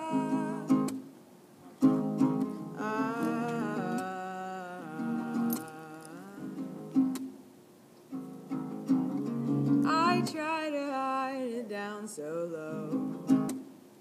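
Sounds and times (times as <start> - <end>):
person humming wordless melody: 0.0 - 1.0, 2.5 - 7.2, 9.6 - 13.5
ukulele picked and strummed: 0.0 - 7.4, 8.1 - 10.5, 12.7 - 13.8.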